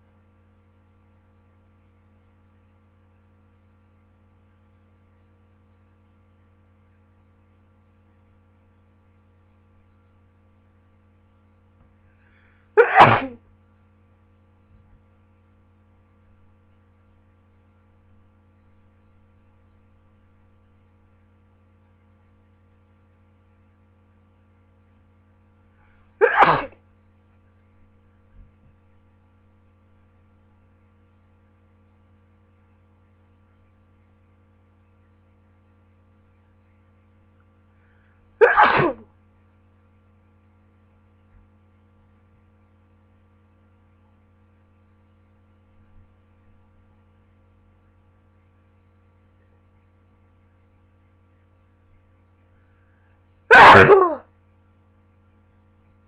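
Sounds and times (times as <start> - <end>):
faint electrical hum: 0.0 - 56.0
person sneezing: 12.4 - 13.4, 26.2 - 26.8, 38.4 - 39.1, 53.5 - 54.3.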